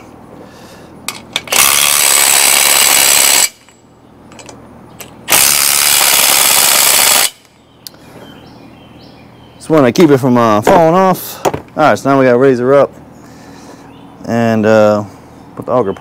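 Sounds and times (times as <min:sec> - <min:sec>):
impact wrench running: 0:01.3 - 0:03.7, 0:05.3 - 0:07.5.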